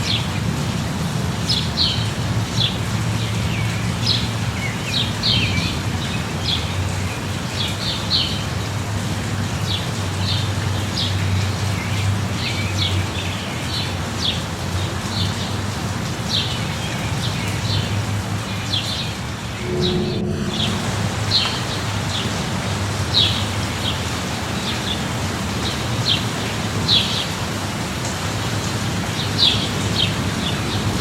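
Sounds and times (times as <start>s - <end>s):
light rain: 0.0s - 20.3s, 22.7s - 31.0s
low steady rumble: 19.5s - 21.8s.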